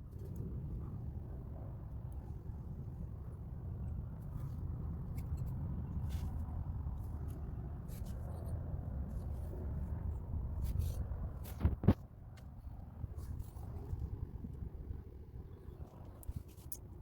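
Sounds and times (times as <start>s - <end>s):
faint ticks and scrapes: 0.0s - 1.0s, 3.9s - 17.0s
road and engine rumble: 0.0s - 17.0s.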